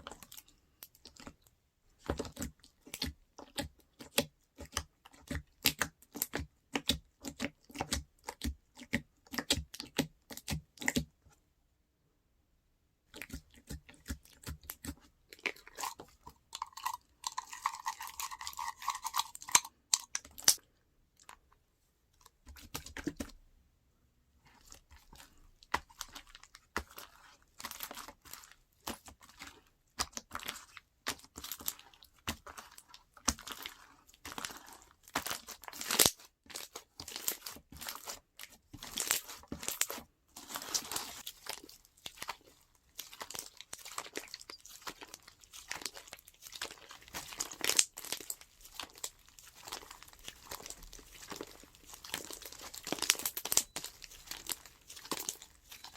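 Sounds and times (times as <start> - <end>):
slime crackling and popping: 25.6 - 55.9.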